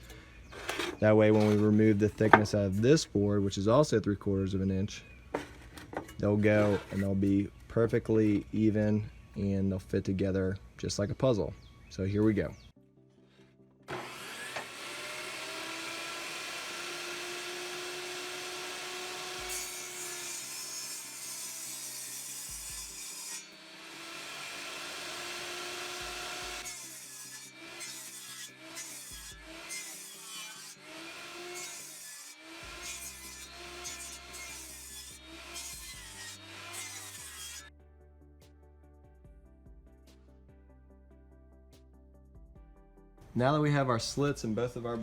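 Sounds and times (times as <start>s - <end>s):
table saw cutting wood: 0.0s - 2.7s, 5.4s - 7.3s, 13.9s - 37.7s.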